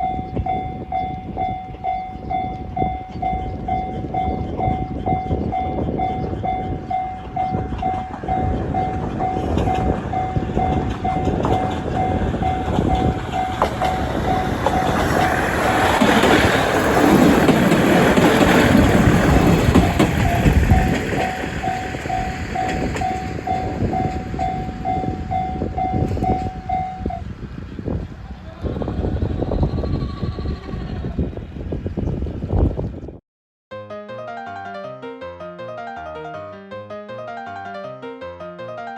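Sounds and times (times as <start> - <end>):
level-crossing warning bell: 0.0 - 27.2
diesel train rumble: 0.0 - 33.1.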